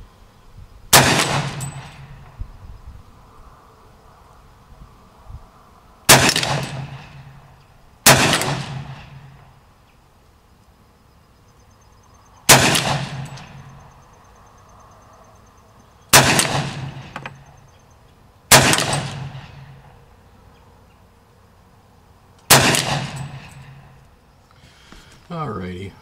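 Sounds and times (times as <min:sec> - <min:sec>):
carbine gunshots with echo: 0:00.9 - 0:02.4, 0:06.1 - 0:09.6, 0:12.4 - 0:13.8, 0:16.1 - 0:17.6, 0:18.5 - 0:19.9, 0:22.5 - 0:24.0.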